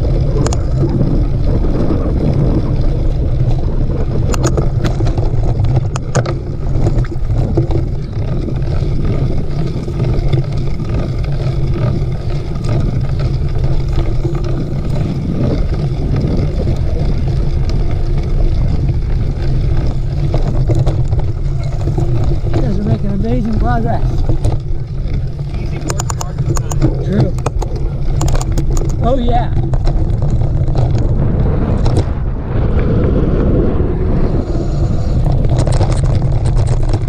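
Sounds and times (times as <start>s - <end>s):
bike trail noise: 0.0s - 37.0s
wind rumble: 0.0s - 37.0s
sharp rattling clicks: 4.2s - 31.1s.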